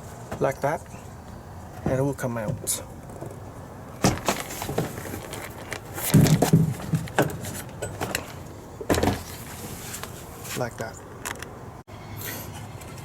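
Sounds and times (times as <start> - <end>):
plastic trim knocking and scraping: 4.0 - 8.3.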